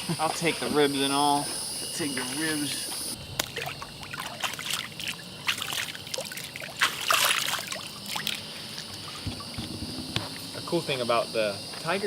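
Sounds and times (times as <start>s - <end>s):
water splashing and trickling: 3.4s - 10.0s.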